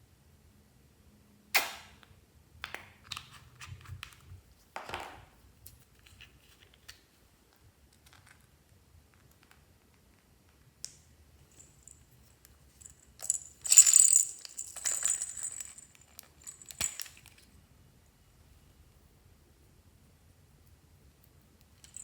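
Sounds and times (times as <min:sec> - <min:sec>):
sharp snap: 0:01.6 - 0:02.0.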